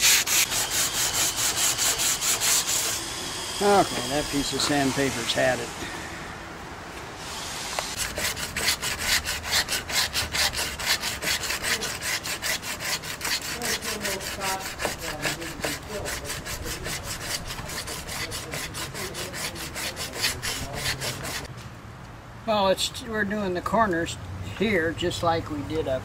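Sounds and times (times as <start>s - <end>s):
hand sanding strokes: 0.0s - 6.1s, 7.2s - 21.5s.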